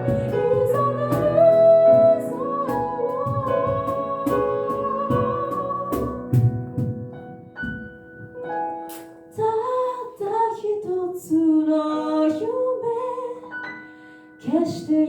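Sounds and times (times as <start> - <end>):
a cappella group singing: 0.0 - 6.4
vocal percussion beats: 0.0 - 7.8.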